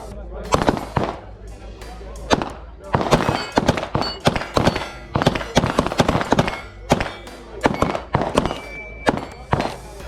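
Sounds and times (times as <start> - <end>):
pistol shots: 0.5 - 1.4, 2.2 - 10.0.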